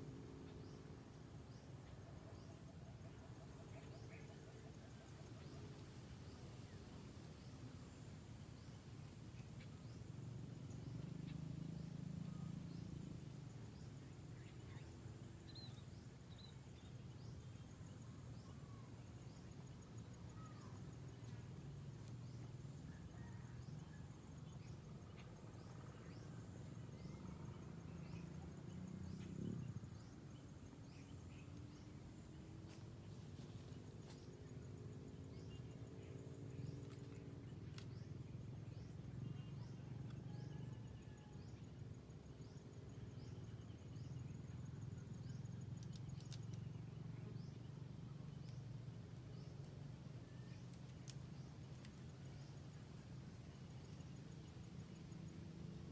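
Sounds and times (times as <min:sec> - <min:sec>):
low steady rumble: 0:00.0 - 0:55.9
faint bird chirps: 0:00.3 - 0:41.7.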